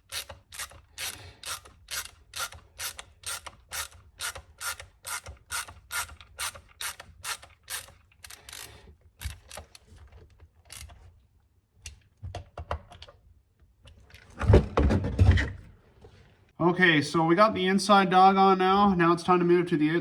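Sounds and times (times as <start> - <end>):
ratchet wrench clicking: 0.1 - 9.6.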